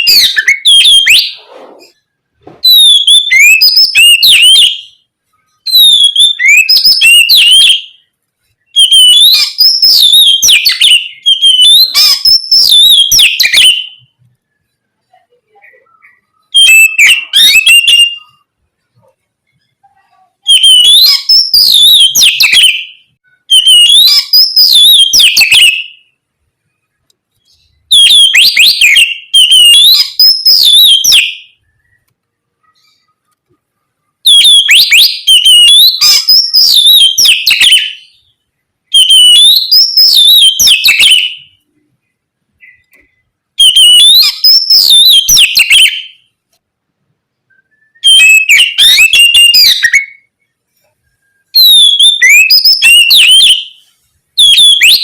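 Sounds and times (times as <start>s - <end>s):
bird singing whistled phrases: 0.0s - 2.0s, 2.6s - 8.0s, 8.6s - 14.2s, 15.5s - 18.5s, 20.4s - 26.1s, 27.5s - 32.0s, 34.2s - 38.3s, 38.9s - 41.6s, 43.6s - 46.3s, 47.5s - 50.3s, 51.2s - 55.0s.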